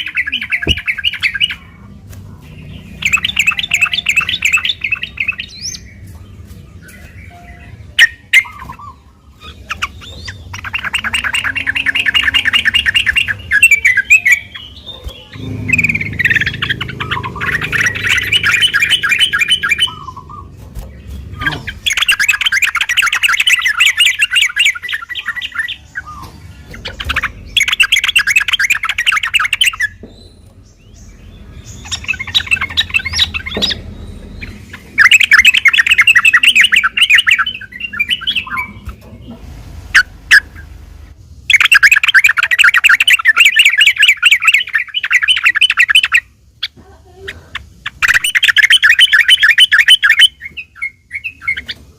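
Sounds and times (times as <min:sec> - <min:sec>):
bulbul singing chattering notes: 0:00.0 - 0:01.7, 0:02.5 - 0:06.2, 0:06.8 - 0:30.0, 0:30.7 - 0:39.0, 0:41.4 - 0:46.4, 0:47.6 - 0:51.8.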